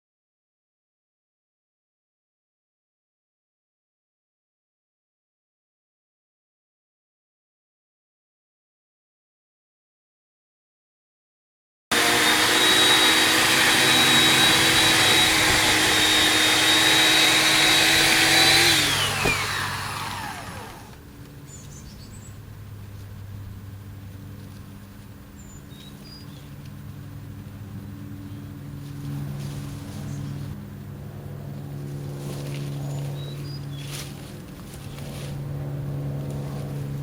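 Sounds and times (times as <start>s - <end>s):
machine motor running and winding down: 11.9s - 21.0s.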